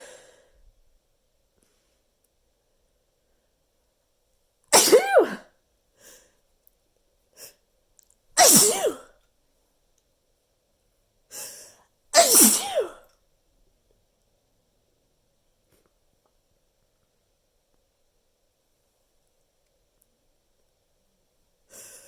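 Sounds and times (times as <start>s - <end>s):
exaggerated human sneezes: 4.7s - 5.5s, 8.4s - 9.1s, 12.2s - 13.0s.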